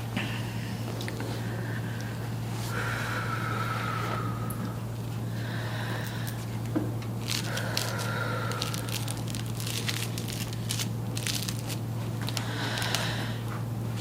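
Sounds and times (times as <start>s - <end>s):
steady low hum: 0.0s - 14.0s
crinkling crackling clicks: 7.0s - 13.1s.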